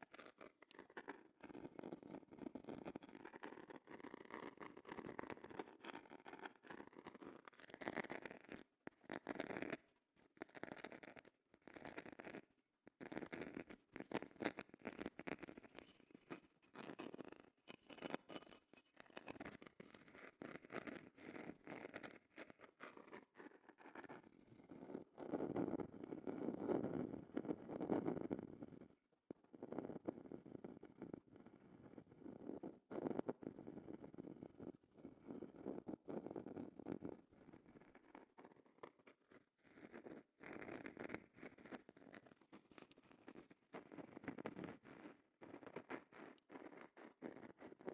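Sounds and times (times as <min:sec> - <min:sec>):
seashell scratching: 0:15.1 - 0:22.6.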